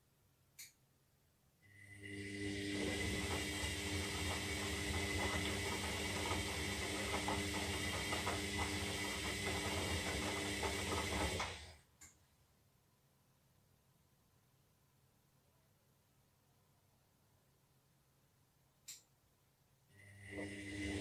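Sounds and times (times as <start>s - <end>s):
washing machine drum turning: 2.6s - 11.8s.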